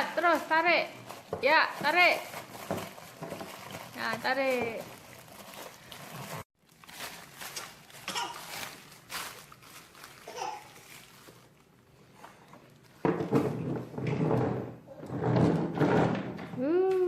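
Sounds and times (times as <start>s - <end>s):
plastic packaging crinkling: 0.0s - 11.8s.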